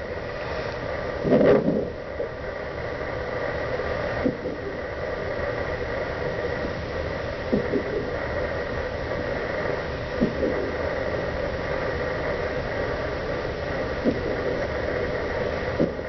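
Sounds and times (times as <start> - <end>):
doppler monitor hissing: 0.0 - 16.0.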